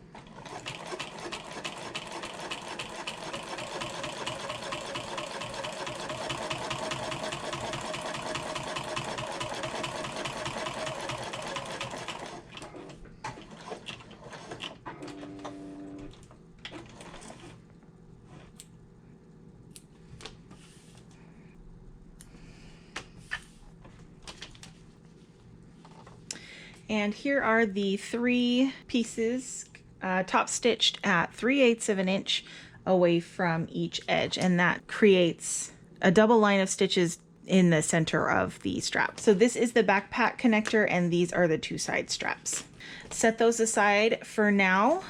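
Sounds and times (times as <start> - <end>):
sewing machine stitching: 0.1 - 17.6.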